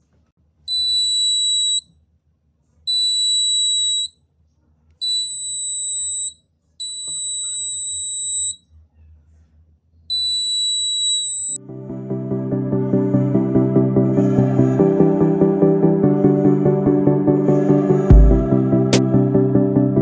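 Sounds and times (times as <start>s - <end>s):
piezo buzzer beeping: 5.0s - 8.6s.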